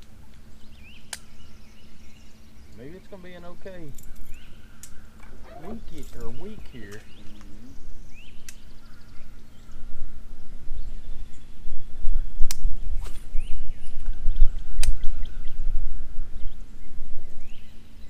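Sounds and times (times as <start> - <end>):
low rumbling noise: 0.0 - 18.0
small birds chirping: 0.0 - 18.0
steady low hum: 0.0 - 18.0.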